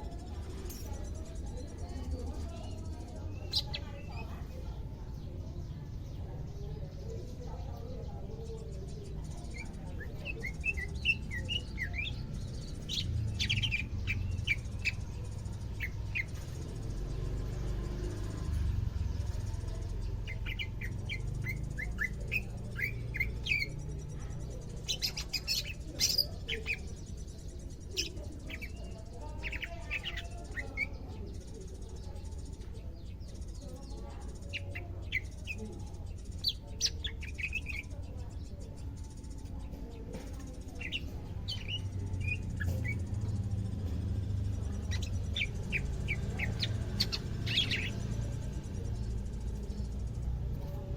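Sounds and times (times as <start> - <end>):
bird chirping: 0.0 - 50.9
steady low hum: 0.0 - 50.9.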